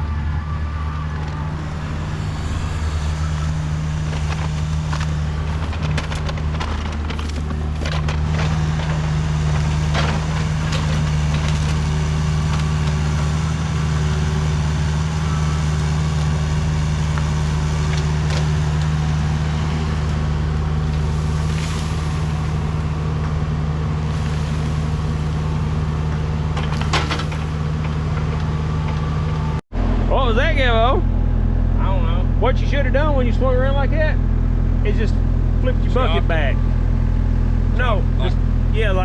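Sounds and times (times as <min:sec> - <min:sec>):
diesel engine running: 0:00.0 - 0:39.0.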